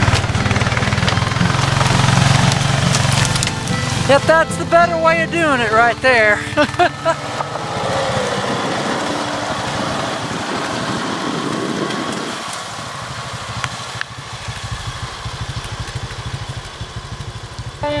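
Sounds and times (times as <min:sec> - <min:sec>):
rushing noise: 0:00.0 - 0:04.6, 0:05.7 - 0:17.8
vehicle engine idling: 0:00.0 - 0:18.0.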